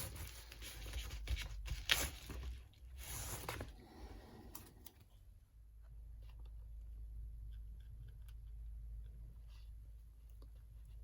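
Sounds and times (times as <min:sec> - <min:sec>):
hands and tools rustling and scraping: 0:00.0 - 0:11.0.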